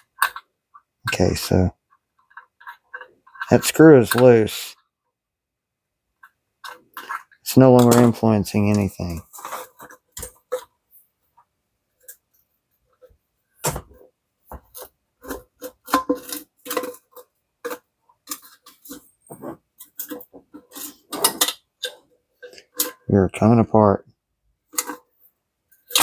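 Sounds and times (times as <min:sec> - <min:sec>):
metal parts clinking: 0:15.7 - 0:19.0, 0:19.8 - 0:23.0, 0:25.8 - 0:26.0.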